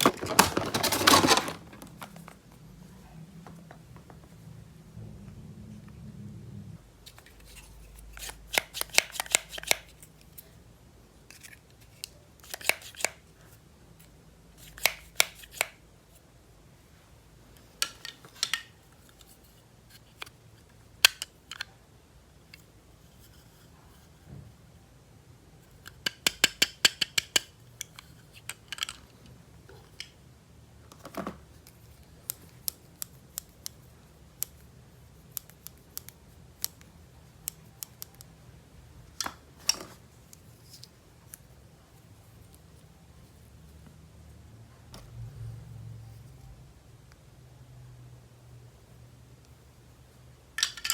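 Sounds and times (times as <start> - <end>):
scissors snipping packaging: 8.1 - 9.9, 12.4 - 13.2.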